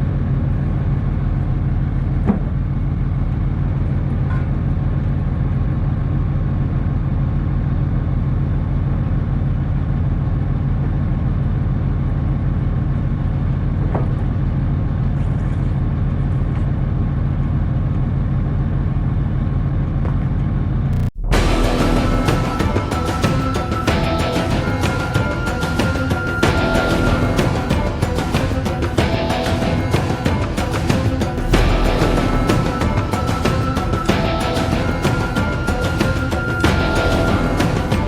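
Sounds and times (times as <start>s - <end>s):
vehicle engine droning: 0.0s - 38.0s
music: 21.0s - 38.0s.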